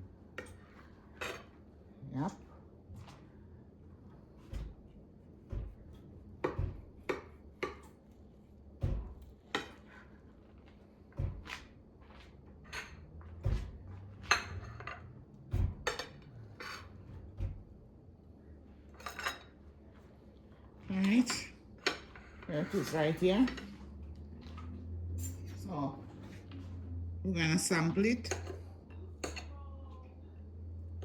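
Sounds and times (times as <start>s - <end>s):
cutlery clinking against a dish: 19.0s - 19.6s, 28.2s - 29.5s.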